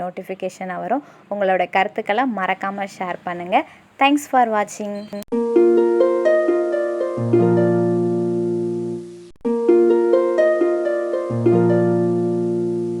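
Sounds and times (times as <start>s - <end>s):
plucked harp-like music: 5.3s - 8.9s, 9.5s - 13.0s.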